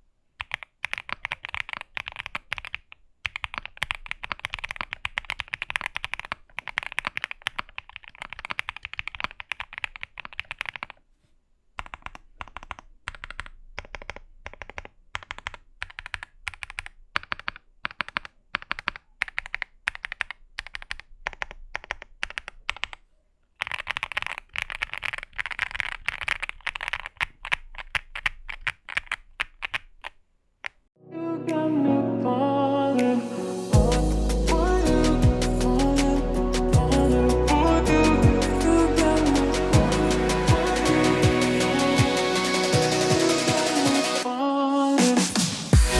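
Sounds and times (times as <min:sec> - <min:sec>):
mechanical keyboard typing: 0:00.4 - 0:11.0, 0:11.8 - 0:23.0, 0:23.6 - 0:30.8.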